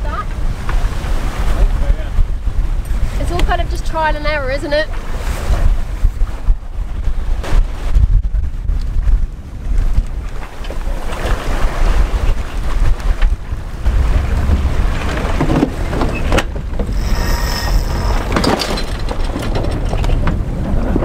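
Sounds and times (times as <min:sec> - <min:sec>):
boat rushing through water: 0:00.0 - 0:08.7, 0:09.3 - 0:21.0
wind buffeting microphone: 0:00.0 - 0:21.0
high-pitched whine: 0:16.8 - 0:19.2.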